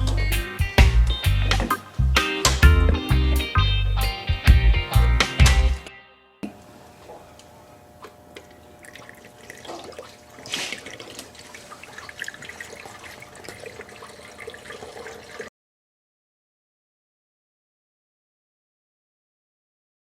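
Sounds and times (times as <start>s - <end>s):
water trickling and dripping: 8.0s - 15.5s.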